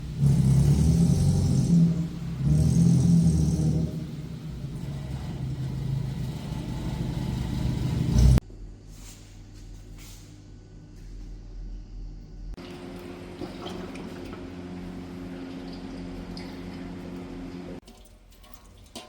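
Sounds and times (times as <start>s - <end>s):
car engine revving: 0.0s - 8.4s.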